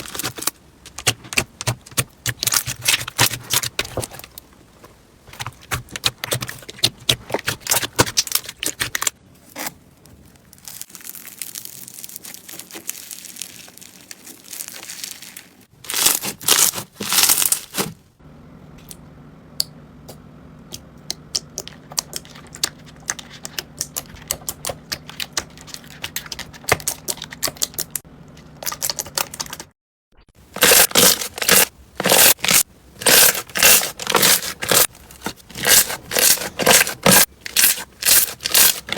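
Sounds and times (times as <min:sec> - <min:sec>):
slime clicking and crackling: 0:10.6 - 0:17.9.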